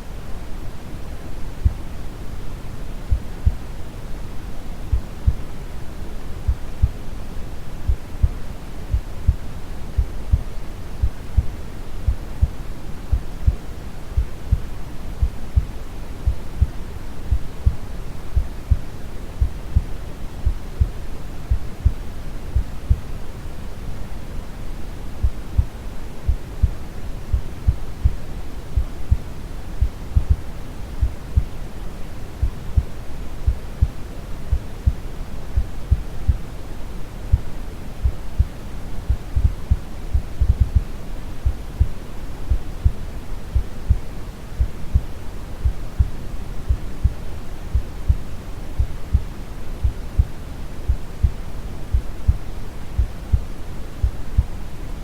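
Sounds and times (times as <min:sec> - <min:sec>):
slow heartbeat thudding: 0:03.1 - 0:03.6, 0:04.9 - 0:05.4, 0:06.5 - 0:07.0, 0:07.9 - 0:17.8, 0:25.2 - 0:28.2, 0:28.8 - 0:31.5, 0:38.0 - 0:48.2, 0:48.8 - 0:54.6.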